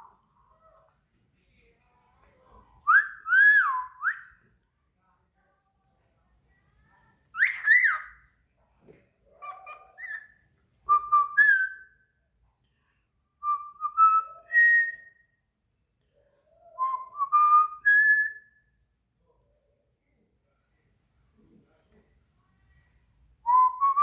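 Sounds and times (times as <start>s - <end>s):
songbird singing whistled phrases: 7.4s - 8.2s, 13.4s - 15.3s.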